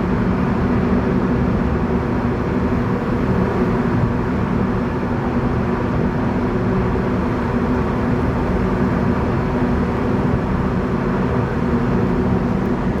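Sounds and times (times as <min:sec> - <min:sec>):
ship engines droning: 0:06.8 - 0:13.0.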